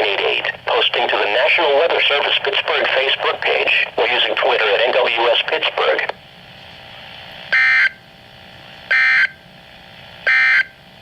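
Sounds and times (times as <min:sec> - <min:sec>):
faint radio hiss: 0:00.0 - 0:07.4.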